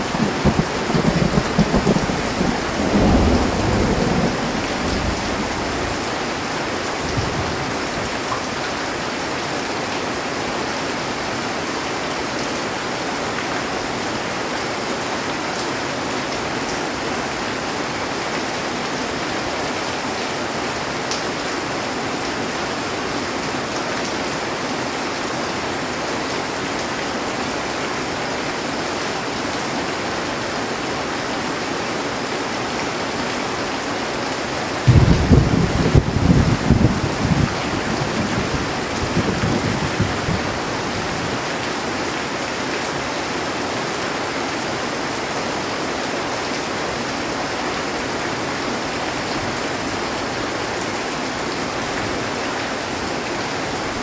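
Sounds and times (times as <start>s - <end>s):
low thunder rumble: 0.0s - 7.9s, 34.9s - 41.5s
heavy rain on a metal roof: 0.0s - 54.0s.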